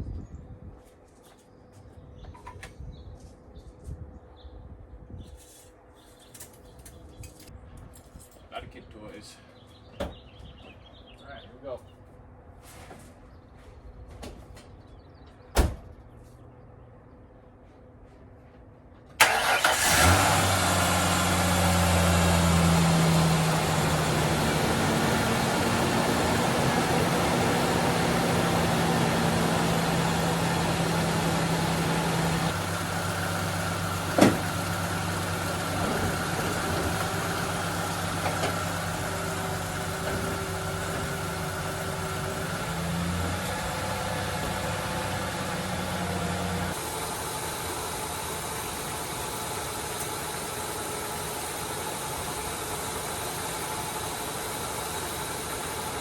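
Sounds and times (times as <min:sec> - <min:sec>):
truck engine idling: 0:19.2 - 0:56.0.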